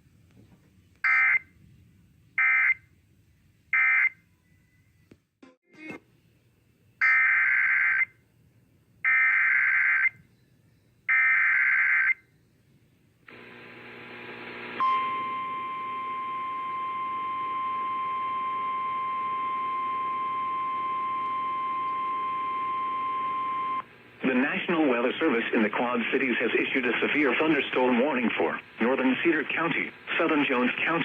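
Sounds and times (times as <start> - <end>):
receiver hiss: 13.3 - 31.0
steady alarm tone: 14.8 - 23.8.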